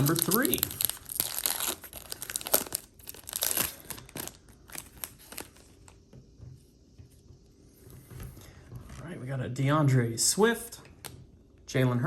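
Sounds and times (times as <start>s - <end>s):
wrapper torn and crinkled: 0.0s - 5.7s.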